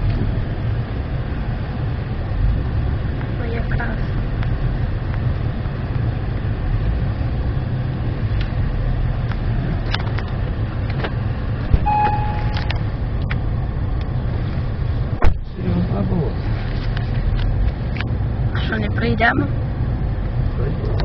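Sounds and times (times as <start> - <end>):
vehicle driving low rumble: 0.0 - 21.0
brief tone: 11.8 - 12.8.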